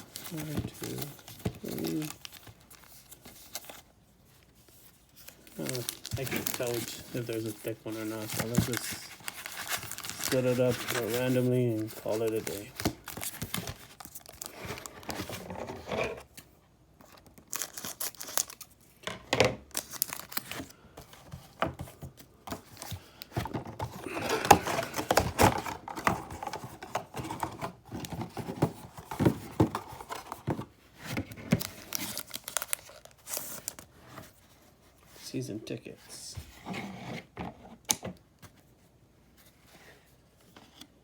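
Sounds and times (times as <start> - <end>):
foil wrappers crinkling and tearing: 0.0 - 3.9, 4.8 - 15.6, 17.4 - 18.9, 19.7 - 20.7, 31.4 - 33.9
handling of cards: 0.0 - 35.4.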